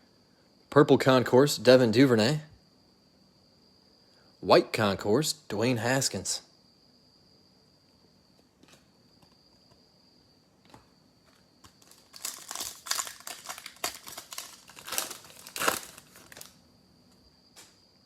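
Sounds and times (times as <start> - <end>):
card pack wrapper crinkling: 11.3 - 16.6.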